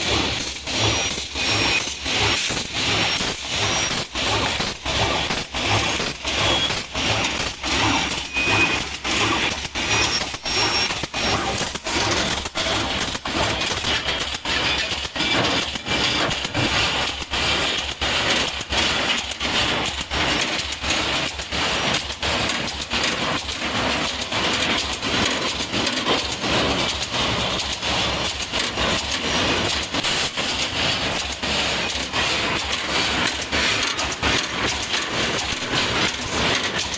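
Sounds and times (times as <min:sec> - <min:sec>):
welding machine rhythmic clatter: 0:00.0 - 0:36.9.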